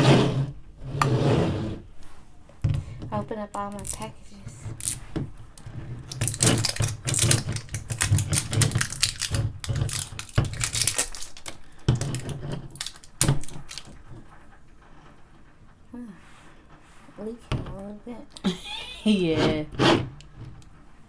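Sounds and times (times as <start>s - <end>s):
snack packages crinkling open: 3.7s - 4.0s, 4.8s - 5.0s, 6.0s - 14.0s.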